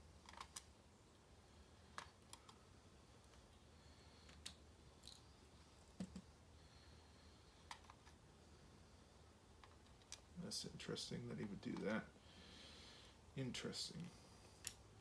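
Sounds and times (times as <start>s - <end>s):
faint small metal clicks: 1.9s - 2.6s, 4.2s - 5.2s, 14.5s - 14.9s.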